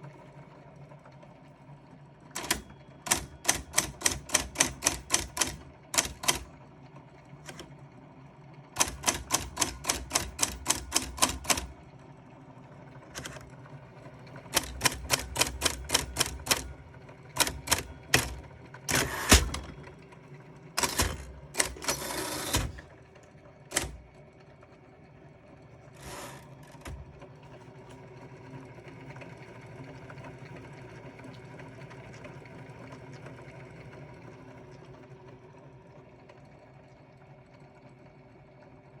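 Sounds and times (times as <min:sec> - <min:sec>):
typewriter clacks: 0:02.4 - 0:06.5, 0:07.5 - 0:07.7, 0:08.8 - 0:11.8, 0:13.2 - 0:13.5, 0:14.5 - 0:16.8, 0:17.4 - 0:19.9, 0:20.8 - 0:22.9, 0:23.7 - 0:24.1, 0:26.0 - 0:27.1
electric motor humming: 0:17.4 - 0:19.7.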